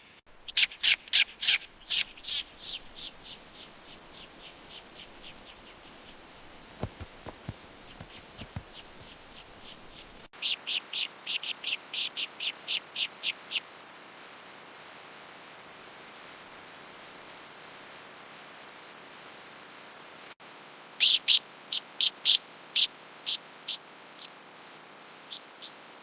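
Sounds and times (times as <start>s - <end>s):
steady hiss: 0.3s - 10.3s.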